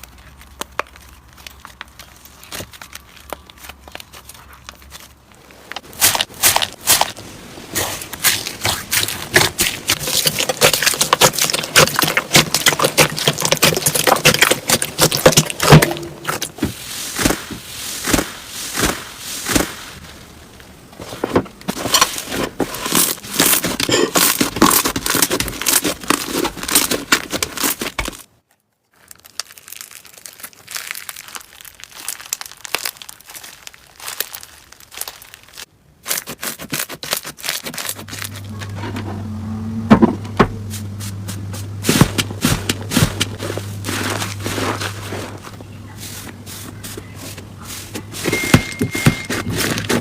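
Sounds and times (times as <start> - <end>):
slime crackling and popping: 0.0 - 5.1, 5.8 - 20.0, 28.9 - 38.5.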